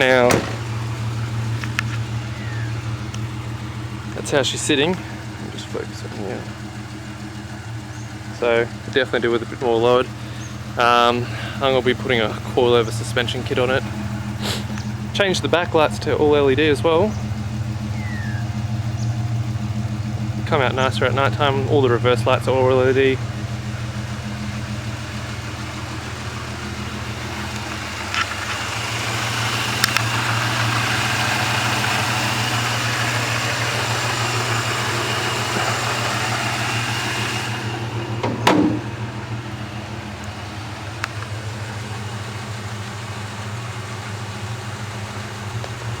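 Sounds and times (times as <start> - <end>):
car engine idling: 0.0 - 46.0
sharp knock: 38.2 - 38.9.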